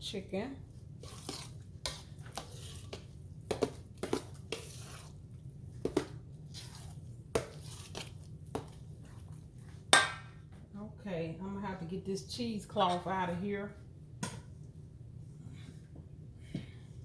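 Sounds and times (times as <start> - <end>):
spoon scraping a pan: 1.0 - 5.2, 5.9 - 9.3.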